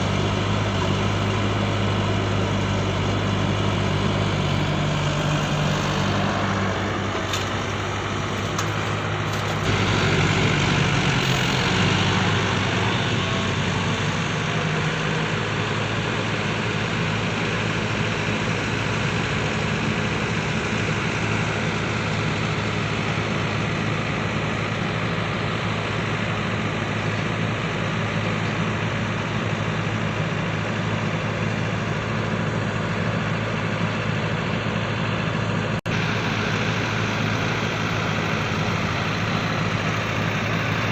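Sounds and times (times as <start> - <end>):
radio-controlled vehicles droning: 0.0 - 40.9.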